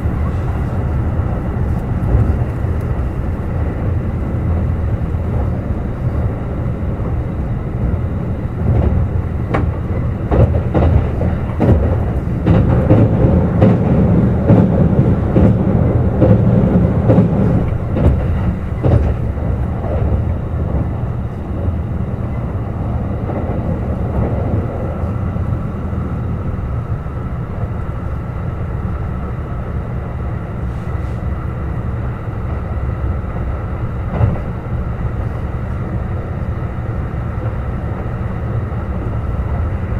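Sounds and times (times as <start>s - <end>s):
wheels clicking over rail joints: 0.0s - 25.3s
electric train rumbling: 0.0s - 39.9s.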